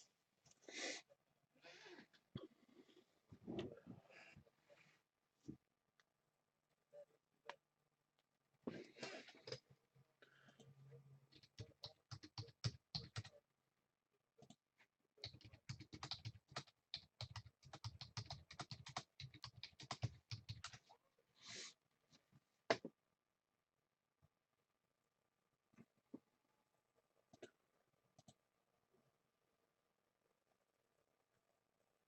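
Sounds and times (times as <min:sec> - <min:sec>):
typing on computer keyboard: 0:11.3 - 0:13.3, 0:15.2 - 0:20.9.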